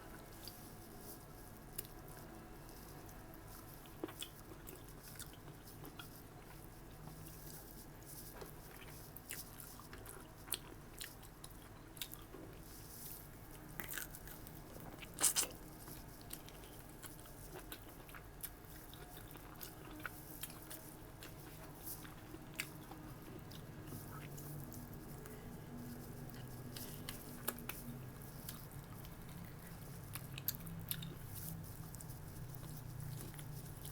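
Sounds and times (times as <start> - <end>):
person chewing: 3.5 - 6.6, 13.7 - 33.9.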